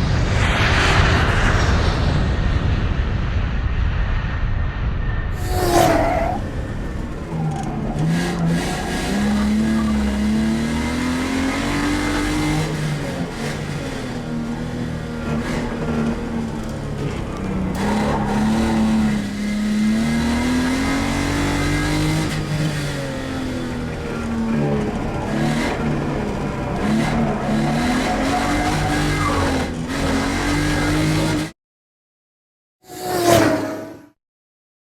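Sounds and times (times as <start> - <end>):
car engine accelerating: 5.4 - 31.5.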